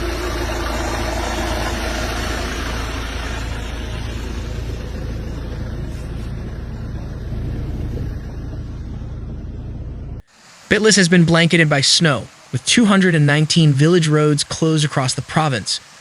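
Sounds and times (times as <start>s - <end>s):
vehicle engine running: 0.0s - 10.3s
street noise: 0.0s - 16.0s.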